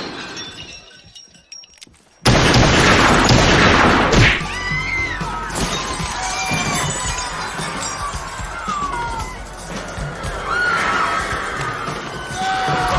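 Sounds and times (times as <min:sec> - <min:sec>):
loud crash with shattering glass: 0:00.0 - 0:12.9
music: 0:02.4 - 0:12.9
high wavering cries: 0:03.0 - 0:12.9.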